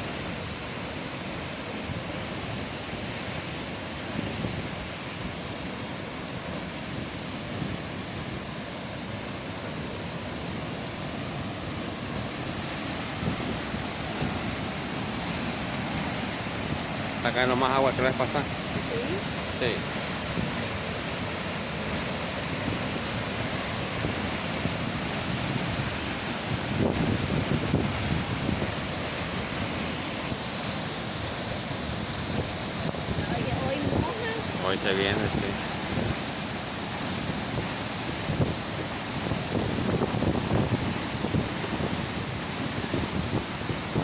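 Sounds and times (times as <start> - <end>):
waterfall rushing: 0.0 - 44.0
wind buffeting microphone: 23.7 - 30.5, 31.6 - 44.0.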